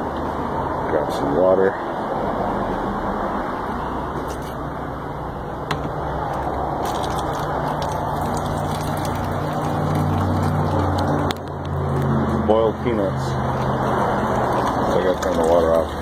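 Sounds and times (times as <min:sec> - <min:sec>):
water running from a tap: 0:06.9 - 0:11.3, 0:13.4 - 0:16.0.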